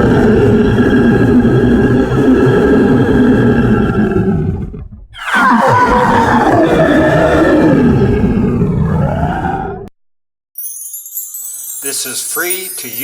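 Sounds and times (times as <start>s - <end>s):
monster growl: 0.0s - 9.9s.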